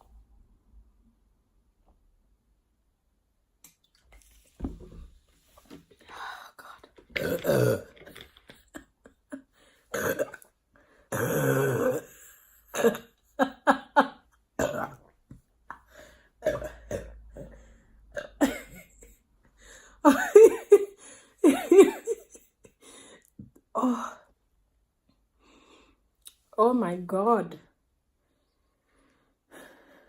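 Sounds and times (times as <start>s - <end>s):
coughing and throat clearing: 7.1s - 8.8s, 9.9s - 10.5s, 11.1s - 12.1s, 12.7s - 13.2s, 14.6s - 15.1s, 16.4s - 19.1s
woman burping: 7.1s - 8.8s, 9.9s - 10.5s, 11.1s - 13.2s, 14.6s - 15.1s, 16.4s - 19.1s.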